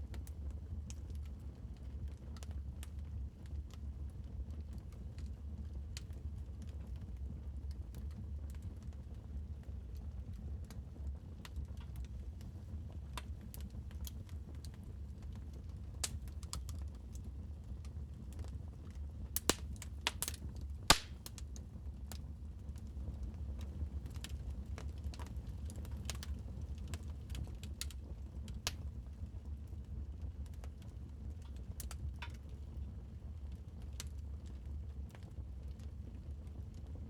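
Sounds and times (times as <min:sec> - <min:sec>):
wood fire crackling: 0:08.4 - 0:36.6.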